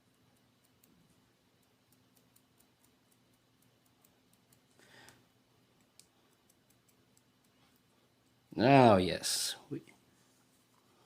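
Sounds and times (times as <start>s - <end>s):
faint scattered ticks: 0.0s - 8.5s
faint steady hum: 0.0s - 11.0s.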